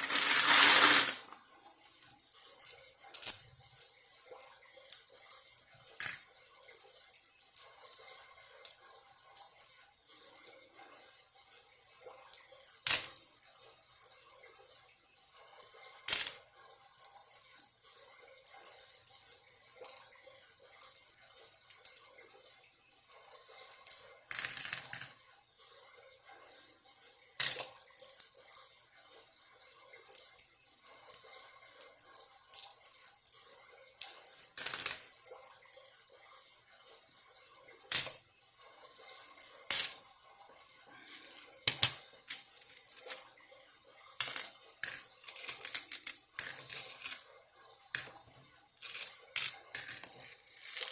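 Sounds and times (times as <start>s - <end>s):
coins clicking and clinking: 0.0s - 1.4s, 2.1s - 10.6s, 11.6s - 13.6s, 16.0s - 16.4s, 18.4s - 20.2s, 20.8s - 22.3s, 23.7s - 25.2s, 27.4s - 28.7s, 29.8s - 36.6s, 37.9s - 38.2s, 39.0s - 40.0s, 41.1s - 43.2s, 44.2s - 47.2s, 47.9s - 48.2s, 48.8s - 50.9s.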